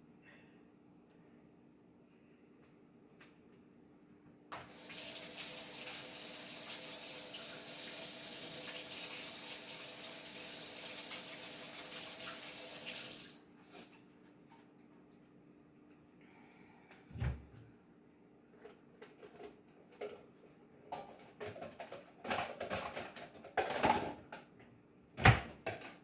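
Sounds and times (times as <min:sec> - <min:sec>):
tap water running into sink: 0:04.6 - 0:13.4.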